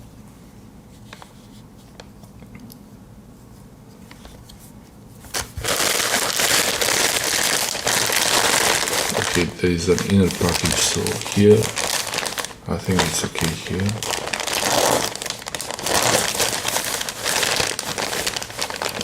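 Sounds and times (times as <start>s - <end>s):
parcel packaging crinkling: 5.2s - 19.0s.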